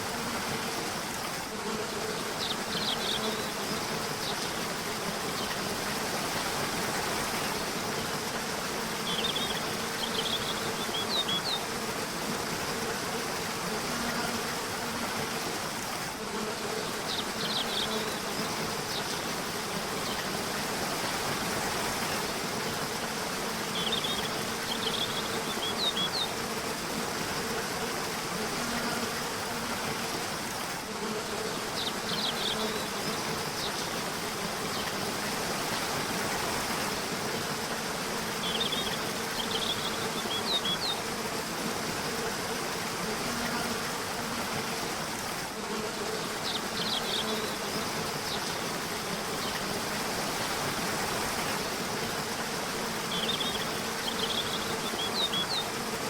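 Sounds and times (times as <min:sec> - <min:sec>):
birds chirping: 0:09.0 - 0:11.7, 0:16.8 - 0:19.2, 0:23.6 - 0:26.4, 0:31.6 - 0:33.8, 0:38.4 - 0:41.1, 0:53.0 - 0:55.8
river water rushing: 0:32.4 - 0:56.0.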